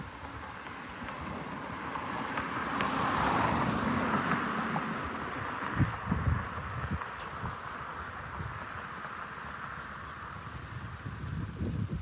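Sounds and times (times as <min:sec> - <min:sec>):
wind thumps on microphone: 0:10.7 - 0:12.0.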